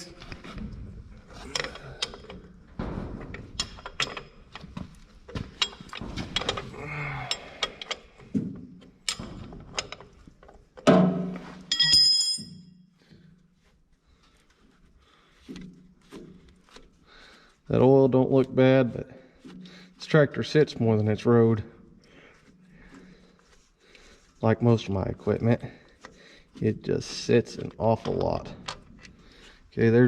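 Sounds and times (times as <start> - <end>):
loud ringing metal clink: 11.7 - 12.8.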